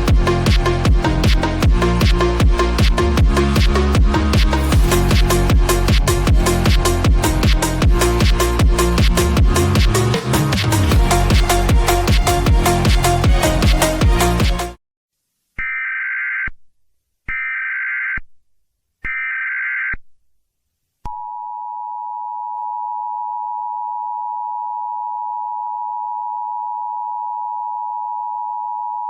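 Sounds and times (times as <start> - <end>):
dance music: 0.0 - 14.8.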